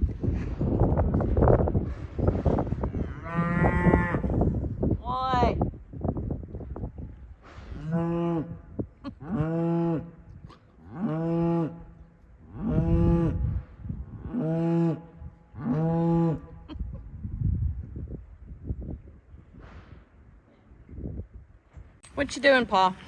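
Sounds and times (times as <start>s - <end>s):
cow mooing: 2.9s - 4.4s.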